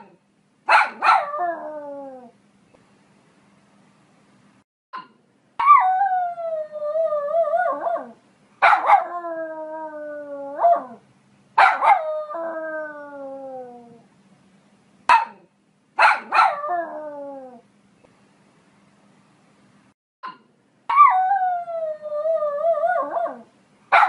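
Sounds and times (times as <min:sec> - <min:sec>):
dog yipping: 0:00.7 - 0:01.4, 0:08.6 - 0:09.1, 0:11.6 - 0:12.0, 0:15.1 - 0:15.4, 0:16.0 - 0:16.6.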